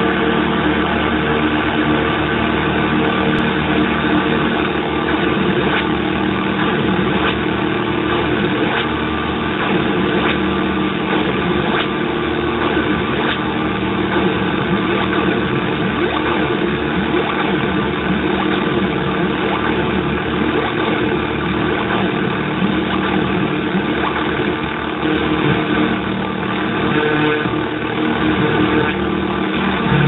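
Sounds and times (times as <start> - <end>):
synthesizer drone: 0.0 - 30.0.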